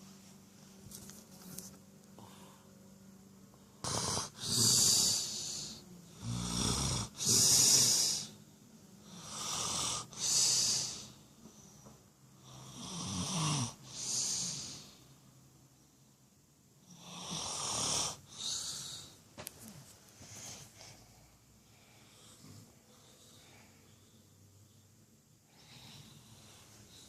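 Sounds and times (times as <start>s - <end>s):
person snoring: 3.8s - 8.4s, 9.0s - 11.2s, 12.4s - 15.0s, 16.9s - 19.2s.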